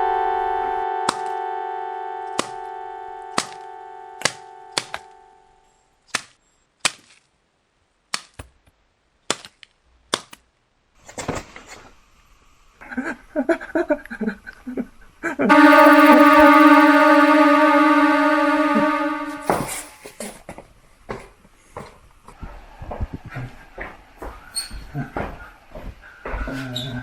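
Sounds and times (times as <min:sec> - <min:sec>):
held chord: 0:00.0 - 0:05.4, 0:15.5 - 0:19.9
eerie synth tone: 0:15.5 - 0:19.9.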